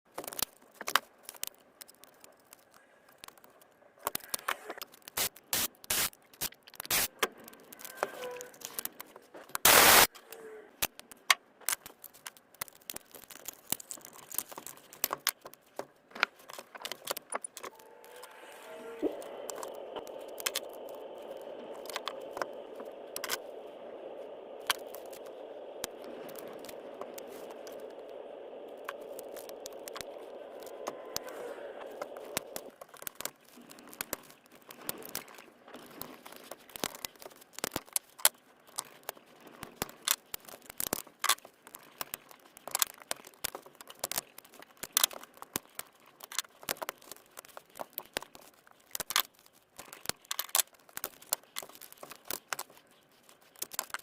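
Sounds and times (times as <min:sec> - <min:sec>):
hands clicking and scraping plastic: 0:00.1 - 0:54.0
steady hum: 0:17.7 - 0:32.8.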